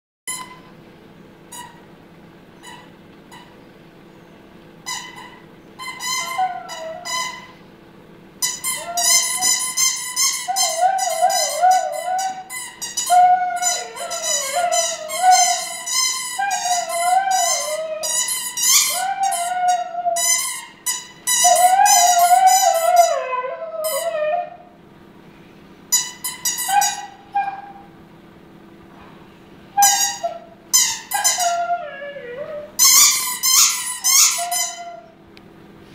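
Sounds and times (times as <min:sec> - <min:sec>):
squeaky toy squeaking: 0:00.3 - 0:00.7, 0:01.5 - 0:01.8, 0:02.6 - 0:03.5, 0:04.8 - 0:07.6, 0:08.4 - 0:24.4, 0:25.9 - 0:27.8, 0:29.8 - 0:35.1
dog howling: 0:05.0 - 0:07.5, 0:08.5 - 0:20.6, 0:21.3 - 0:24.8, 0:26.6 - 0:27.9, 0:29.8 - 0:33.0, 0:34.2 - 0:35.2.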